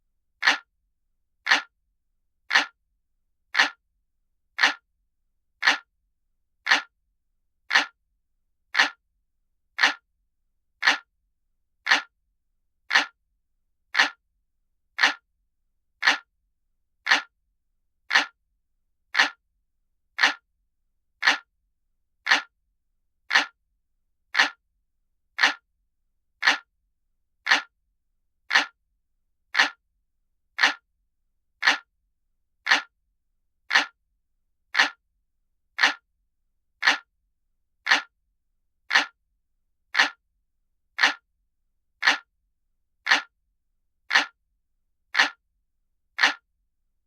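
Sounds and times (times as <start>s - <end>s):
analog clock ticking: 0.4s - 0.7s, 1.5s - 1.7s, 2.5s - 2.8s, 3.6s - 3.8s, 4.6s - 4.8s, 5.6s - 5.9s, 6.7s - 6.9s, 7.7s - 8.0s, 8.8s - 9.0s, 9.8s - 10.0s, 10.8s - 11.1s, 11.9s - 12.1s, 12.9s - 13.2s, 14.0s - 14.2s, 15.0s - 15.2s, 16.0s - 16.3s, 17.1s - 17.3s, 18.1s - 18.4s, 19.2s - 19.4s, 20.2s - 20.4s, 21.2s - 21.5s, 22.3s - 22.5s, 23.3s - 23.6s, 24.4s - 24.6s, 25.4s - 25.6s, 26.4s - 26.7s, 27.5s - 27.7s, 28.5s - 28.8s, 29.6s - 29.8s, 30.6s - 30.8s, 31.6s - 31.9s, 32.7s - 32.9s, 33.7s - 34.0s, 34.8s - 35.0s, 35.8s - 36.0s, 36.8s - 37.1s, 37.9s - 38.1s, 38.9s - 39.2s, 40.0s - 40.2s, 41.0s - 41.2s, 42.0s - 42.3s, 43.0s - 43.3s, 44.1s - 44.4s, 45.1s - 45.4s, 46.2s - 46.4s.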